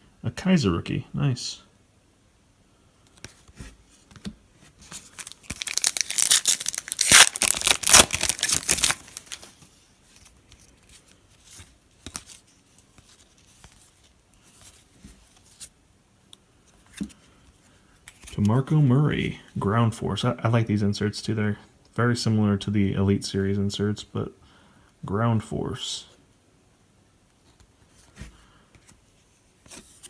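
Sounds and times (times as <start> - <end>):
cards being handled: 3.1 - 15.7, 27.6 - 30.0
foil wrapper tearing and crinkling: 5.1 - 9.5.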